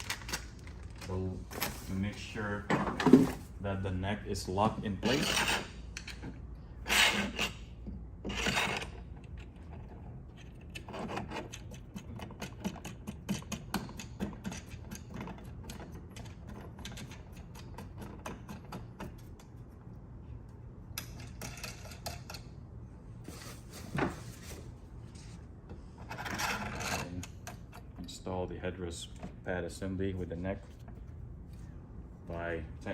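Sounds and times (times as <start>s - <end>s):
rubbing of parts: 23.2s - 28.2s.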